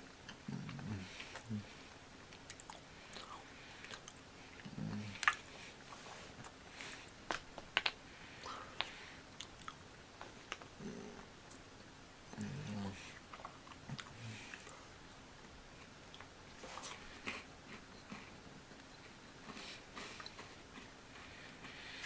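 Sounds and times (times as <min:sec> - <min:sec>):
person chewing crunchy wafer: 0:02.3 - 0:05.5, 0:06.4 - 0:10.7, 0:15.8 - 0:18.4, 0:19.4 - 0:22.0.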